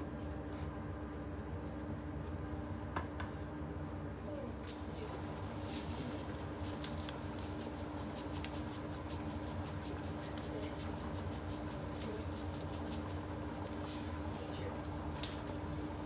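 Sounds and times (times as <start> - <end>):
food frying in hot oil: 4.7 - 16.0
steady hum: 4.8 - 16.0.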